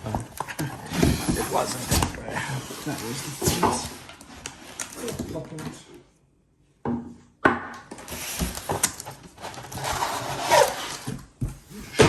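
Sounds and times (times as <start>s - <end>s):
cardboard scraping and rubbing: 0.0s - 5.2s, 8.0s - 12.0s.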